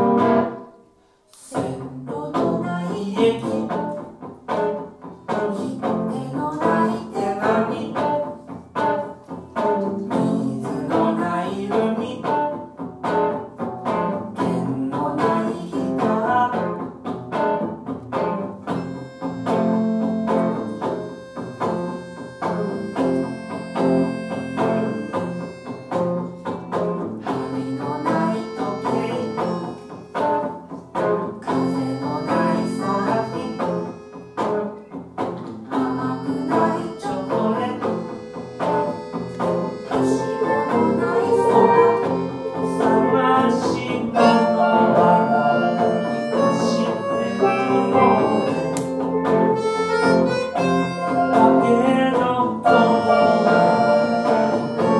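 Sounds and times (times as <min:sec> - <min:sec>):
live band playing busy tune: 0:17.3 - 0:54.9.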